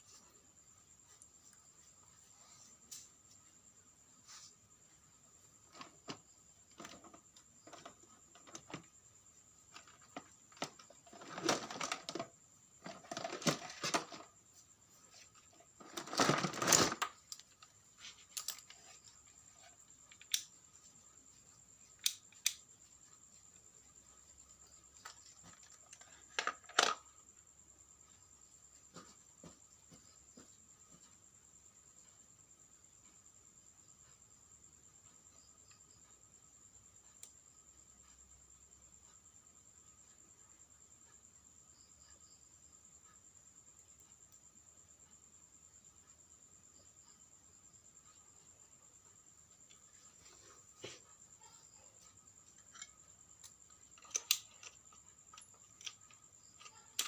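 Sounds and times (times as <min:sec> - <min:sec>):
plastic parts and tools clicking: 0:05.7 - 0:08.9, 0:09.7 - 0:14.3, 0:15.4 - 0:19.0, 0:19.6 - 0:20.5, 0:25.0 - 0:27.1, 0:52.6 - 0:57.0.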